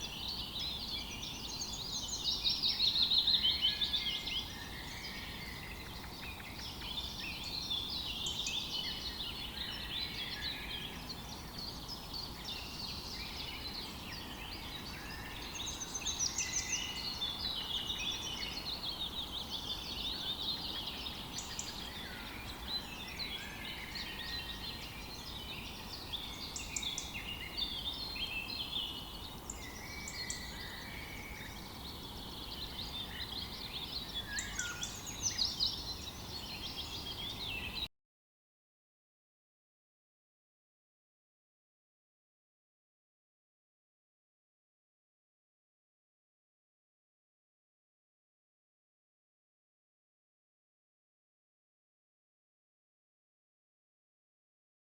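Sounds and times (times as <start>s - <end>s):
small birds chirping and singing: 0.0s - 37.9s.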